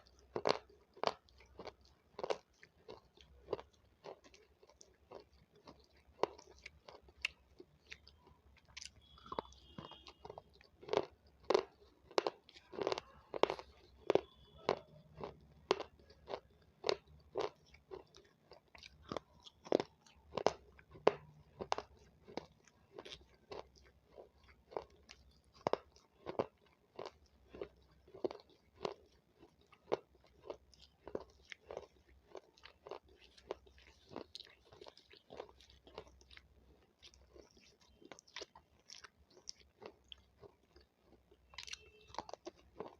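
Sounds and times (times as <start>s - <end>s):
crunching and chewing raw pepper: 0.0s - 42.9s.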